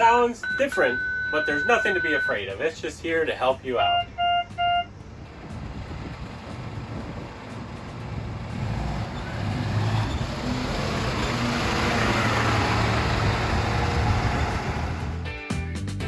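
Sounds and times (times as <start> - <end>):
vehicle engine hum: 0.0 - 15.4
rushing noise: 5.1 - 15.3.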